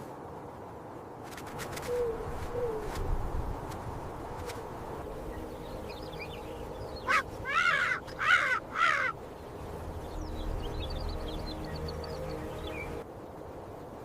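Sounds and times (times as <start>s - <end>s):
crow cawing: 7.1s - 9.2s.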